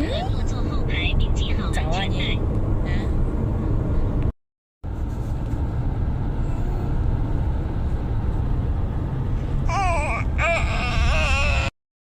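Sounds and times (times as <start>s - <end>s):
car road and engine rumble: 0.0s - 11.8s
baby crying: 9.7s - 11.8s.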